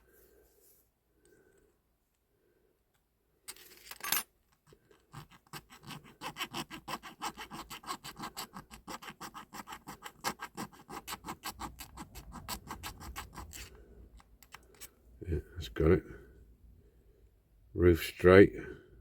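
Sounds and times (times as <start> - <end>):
file rasping on metal: 5.1 - 13.8.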